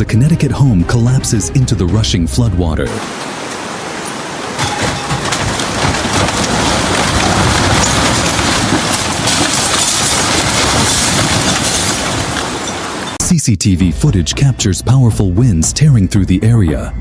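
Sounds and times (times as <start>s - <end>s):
floodwater roaring: 2.9s - 13.2s.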